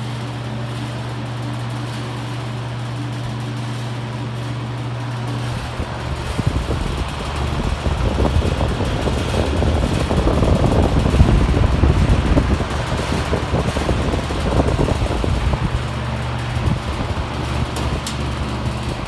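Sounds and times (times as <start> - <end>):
box fan rushing air: 0.0 - 19.0
fan grilles rattling: 0.0 - 19.0.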